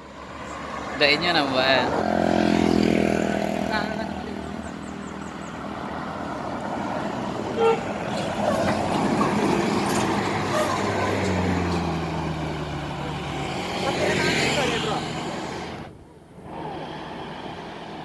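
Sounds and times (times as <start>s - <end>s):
road traffic passing: 0.0s - 18.0s
low engine drone: 14.7s - 18.0s.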